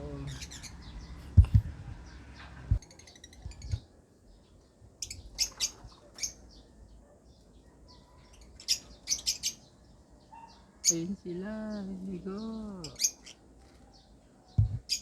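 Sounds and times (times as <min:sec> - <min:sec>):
lovebirds chirping: 0:00.0 - 0:15.0
dull low thumps: 0:00.9 - 0:02.8, 0:14.6 - 0:14.9.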